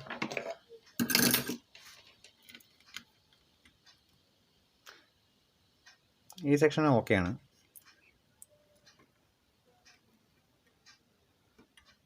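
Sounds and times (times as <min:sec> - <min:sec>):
faint clicks and taps: 0:01.6 - 0:05.1, 0:07.2 - 0:12.0.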